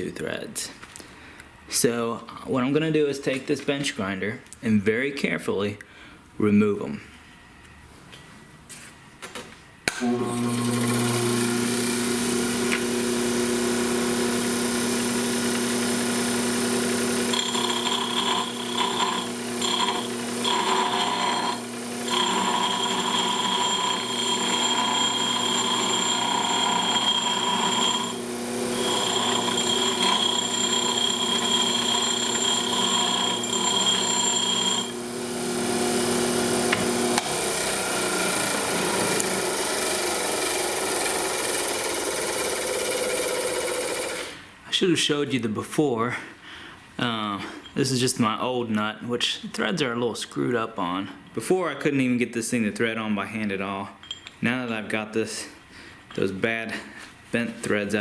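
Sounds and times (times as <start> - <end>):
grinding wheel on steel whine: 10.0 - 44.2
bench grinder humming: 10.0 - 44.4.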